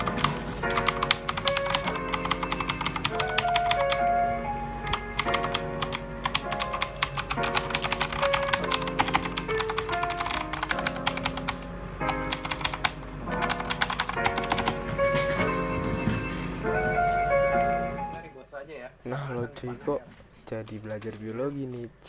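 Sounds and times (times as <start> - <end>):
clicky keyboard typing: 0.0 - 4.0, 4.9 - 14.8
background music: 0.0 - 18.5.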